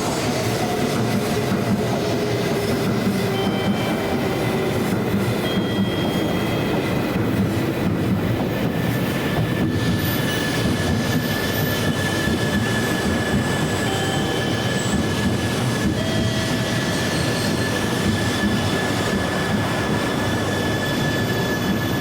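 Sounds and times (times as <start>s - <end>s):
train wheels rumbling: 0.0s - 22.0s
thin high squeal: 16.0s - 22.0s.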